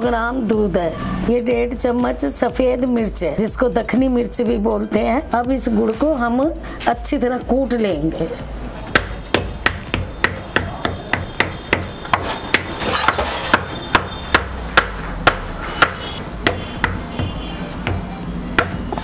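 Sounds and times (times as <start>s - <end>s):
sharp knocks of pounding: 8.9s - 19.0s.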